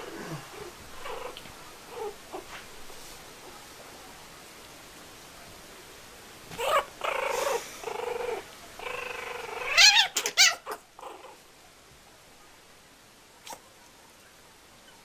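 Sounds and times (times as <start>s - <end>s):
kitten growling: 0.0s - 2.5s, 6.5s - 11.4s
kitten yowling: 9.6s - 10.8s.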